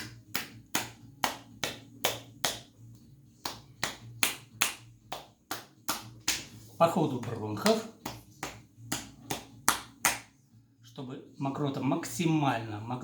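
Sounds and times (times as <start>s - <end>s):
hands slapping on chest: 0.0s - 2.8s, 3.4s - 10.4s.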